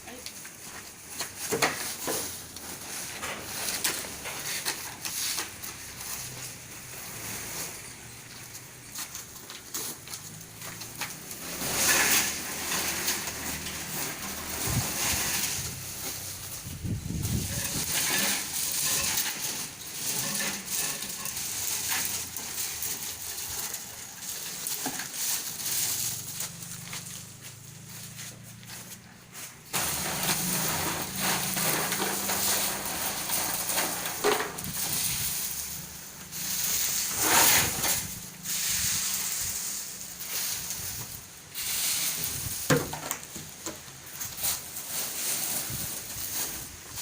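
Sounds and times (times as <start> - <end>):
crackers clattering in machine drum: 0.0 - 28.1, 29.6 - 47.0.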